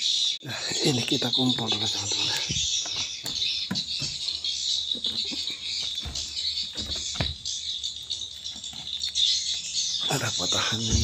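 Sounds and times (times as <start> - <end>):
knocks and rustles of nests: 5.0 - 7.6, 10.0 - 11.0.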